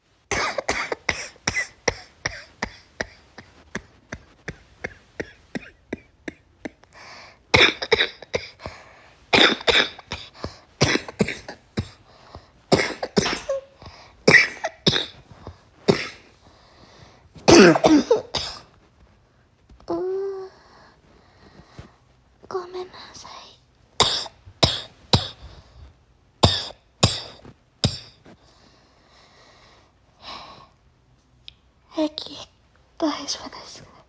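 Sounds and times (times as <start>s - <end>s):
woman coughing: 0.3s - 3.9s, 4.5s - 6.8s, 7.5s - 8.7s, 9.3s - 12.0s, 12.7s - 16.3s, 17.4s - 18.7s, 24.0s - 25.5s, 26.4s - 28.2s.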